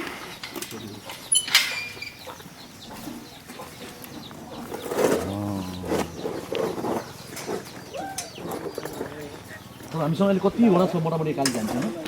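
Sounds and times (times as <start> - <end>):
low droning bird call: 4.7 - 9.7.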